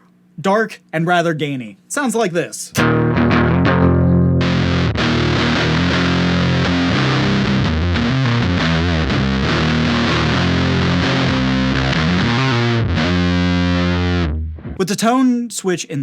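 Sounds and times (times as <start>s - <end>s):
distorted electric guitar: 2.8s - 14.8s.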